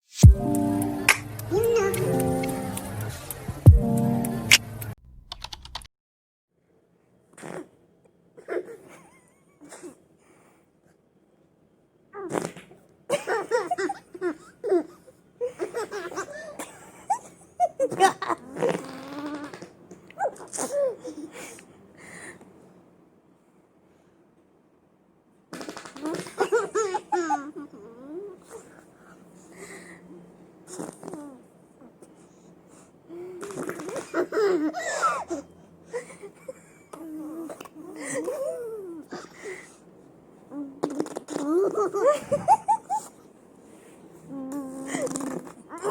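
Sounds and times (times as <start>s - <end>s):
baby laughing and squealing: 26.0s - 28.3s, 40.9s - 43.2s
people laughing and giggling: 42.0s - 43.0s.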